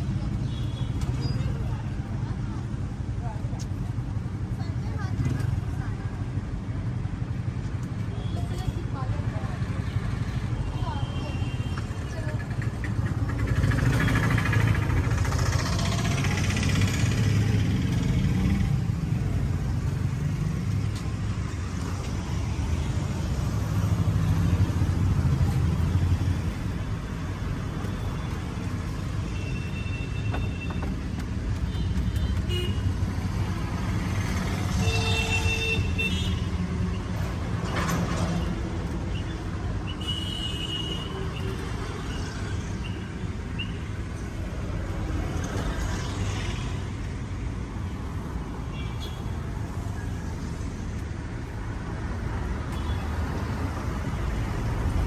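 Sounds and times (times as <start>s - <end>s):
vehicle engines rumbling past: 11.7s - 29.4s, 30.8s - 40.0s.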